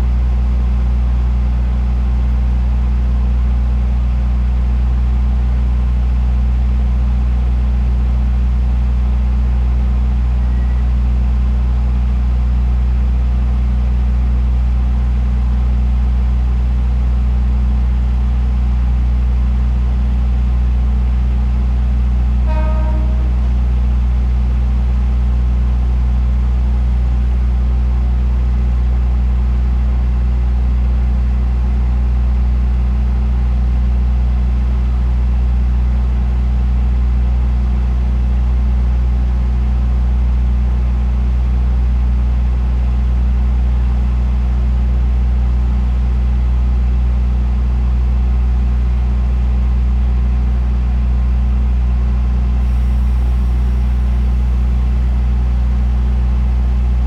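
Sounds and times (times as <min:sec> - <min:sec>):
short horn toot: 0:22.4 - 0:23.6, 0:52.6 - 0:57.0
diesel engine idling: 0:52.5 - 0:57.0.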